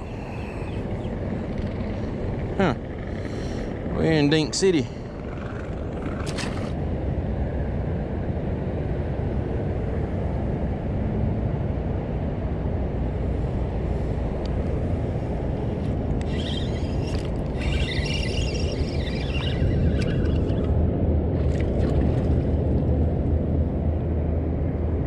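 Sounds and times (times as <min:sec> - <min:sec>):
boat motor rumbling: 0:00.0 - 0:07.6, 0:13.5 - 0:24.4
wind: 0:00.0 - 0:25.0
water wash: 0:16.8 - 0:23.1.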